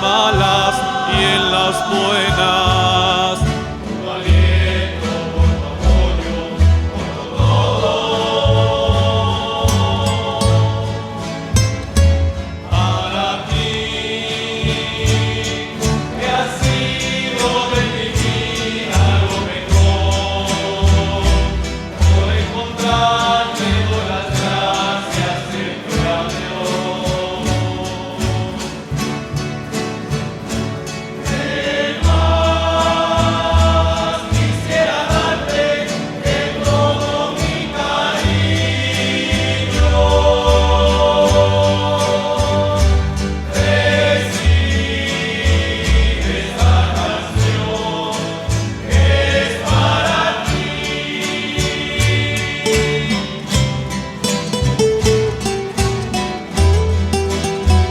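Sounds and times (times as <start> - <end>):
plucked bass line: 0.0 - 25.4, 27.1 - 35.6, 36.2 - 57.9
acoustic guitars strumming: 0.0 - 57.9
voices singing in harmony: 0.0 - 57.9.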